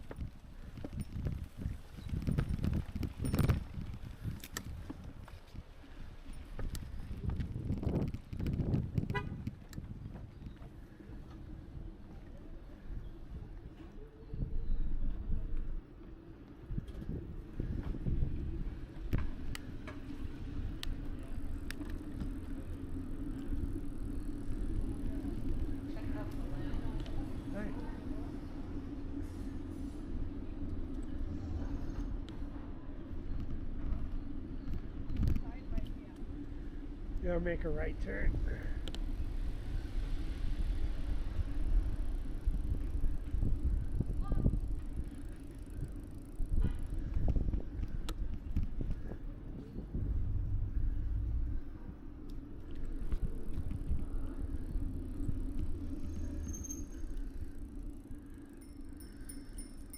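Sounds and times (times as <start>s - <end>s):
sharp clicks and rattles: 0.0s - 5.4s
rumble of wind and tyres: 0.0s - 59.9s.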